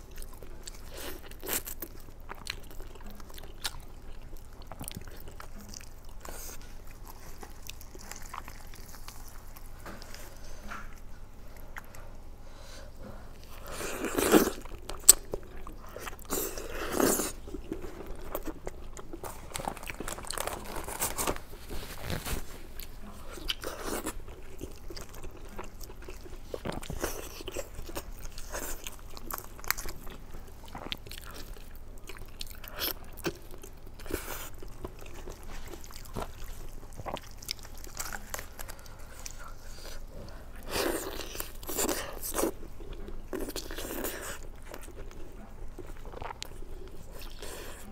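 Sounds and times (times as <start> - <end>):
person biting and chewing: 13.4 - 45.1.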